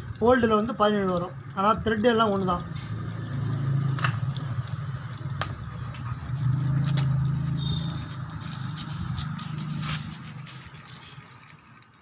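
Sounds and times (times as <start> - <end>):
vehicle engine humming: 2.6 - 10.9.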